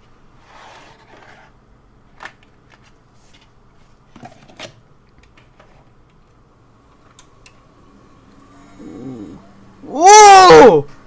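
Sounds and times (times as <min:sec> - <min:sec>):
faint low hum: 0:06.5 - 0:11.0.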